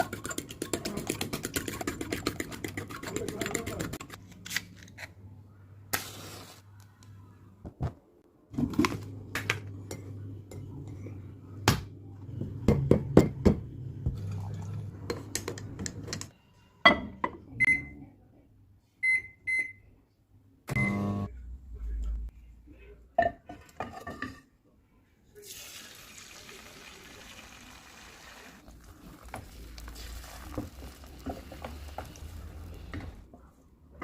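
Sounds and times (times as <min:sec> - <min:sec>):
appliance electronic beeps: 0:20.7 - 0:21.3.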